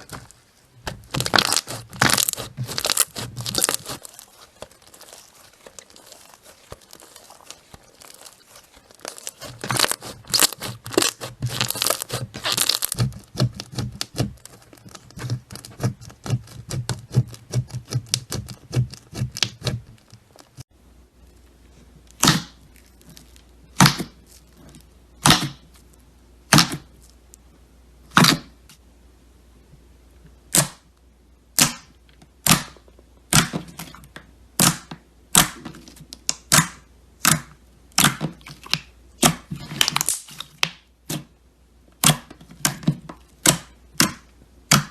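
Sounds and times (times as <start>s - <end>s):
slime squishing and crackling: 0.0s - 20.6s, 22.1s - 25.9s, 31.6s - 40.8s.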